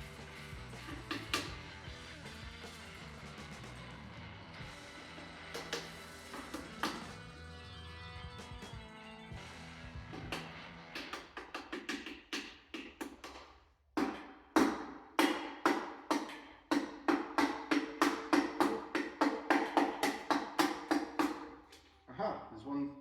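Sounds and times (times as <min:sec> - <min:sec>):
hammer handle knocking on piston: 0:14.0 - 0:21.5.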